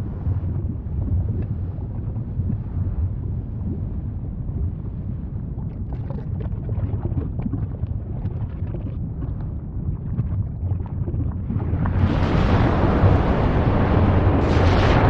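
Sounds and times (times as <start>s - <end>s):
volcano rumbling: 0.0s - 15.0s
crackles and pops: 0.2s - 4.8s, 5.6s - 15.0s
volcanic blast: 11.5s - 15.0s.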